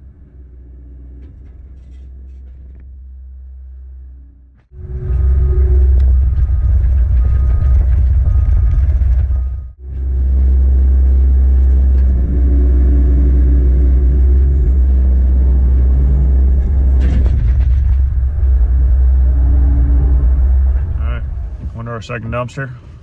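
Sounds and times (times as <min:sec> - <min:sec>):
excavator diesel engine rumbling: 0:00.0 - 0:23.0.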